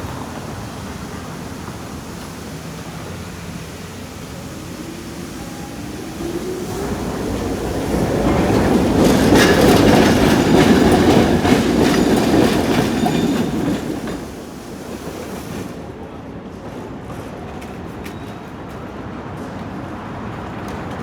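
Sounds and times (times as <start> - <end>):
wheels clacking over rail joints: 0.0 - 15.8
tram rumbling past: 0.0 - 21.0.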